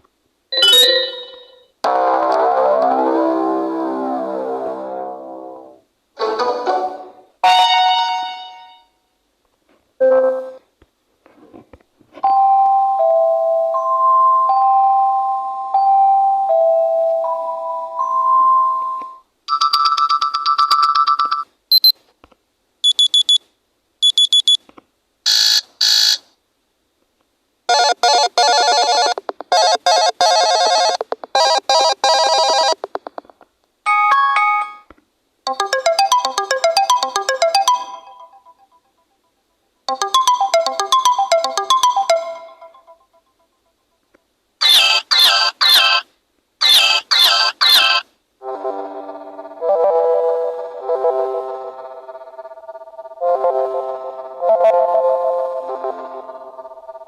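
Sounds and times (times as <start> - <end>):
electronic notification tones: 0.6 - 1.7, 39.9 - 43.0.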